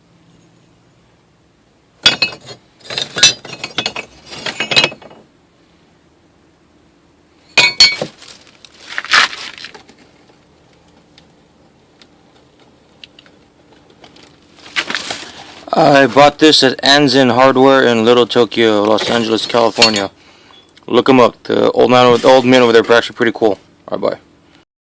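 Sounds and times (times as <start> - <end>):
charcoal sticks clinking: 2.0 - 5.2, 7.6 - 8.4, 18.9 - 20.7.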